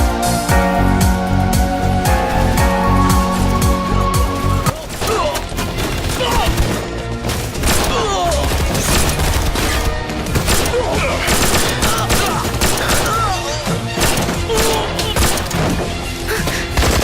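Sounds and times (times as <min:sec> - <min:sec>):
film background score: 0:00.0 - 0:17.0
rapid gunfire: 0:04.8 - 0:15.8, 0:16.6 - 0:17.0.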